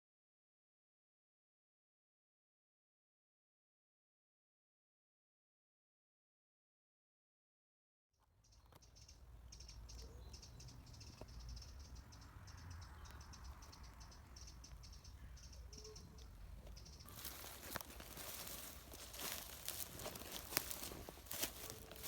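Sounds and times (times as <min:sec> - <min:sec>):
crinkling rustling noise: 0:17.0 - 0:22.0.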